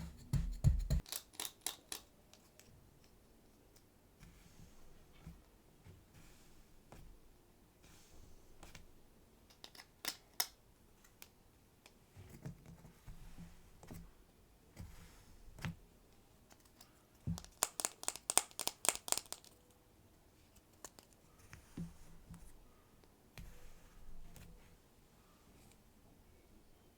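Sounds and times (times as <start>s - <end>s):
plastic pieces clicking: 17.4s - 19.6s.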